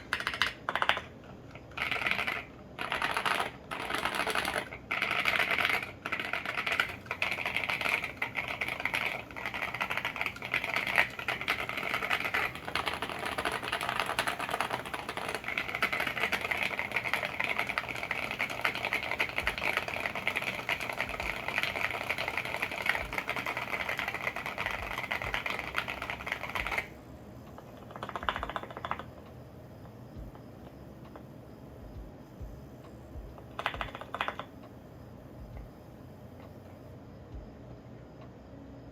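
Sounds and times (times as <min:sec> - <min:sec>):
mechanical keyboard typing: 0:00.0 - 0:27.0, 0:27.7 - 0:29.2, 0:33.3 - 0:34.5.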